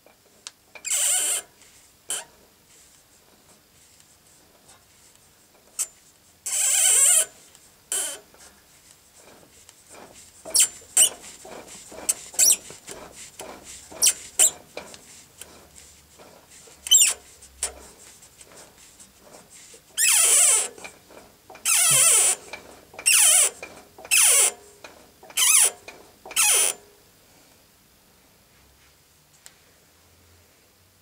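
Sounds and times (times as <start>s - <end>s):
metallic squeaking: 9.2s - 17.9s, 19.2s - 24.6s, 25.3s - 26.8s.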